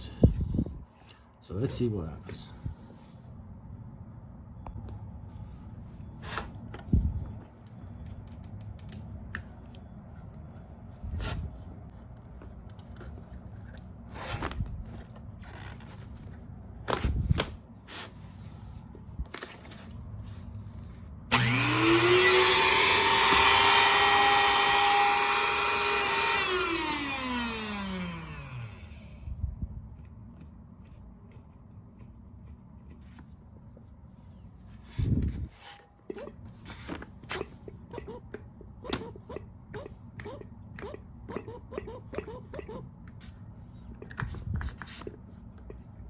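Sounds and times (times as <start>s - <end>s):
small electric motor whining: 21.3s - 29.3s.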